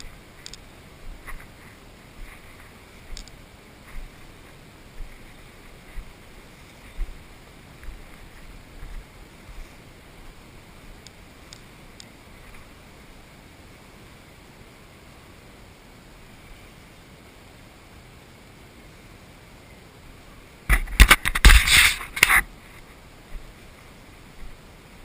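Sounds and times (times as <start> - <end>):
faint sharp clicks: 0.0 - 0.7, 3.1 - 3.4, 11.0 - 12.6
steady hiss: 0.0 - 25.0.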